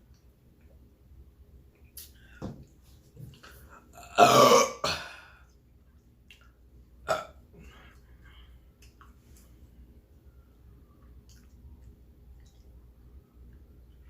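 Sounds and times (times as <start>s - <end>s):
loud burping: 4.0s - 5.2s, 7.1s - 7.4s.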